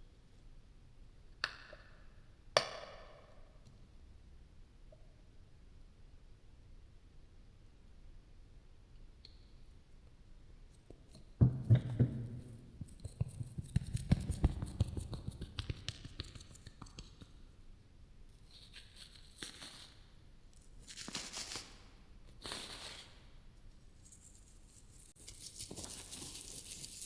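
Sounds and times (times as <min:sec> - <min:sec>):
crackling taps and clicks: 0:10.8 - 0:17.4
scratchy rustles: 0:20.8 - 0:21.8, 0:23.9 - 0:27.0.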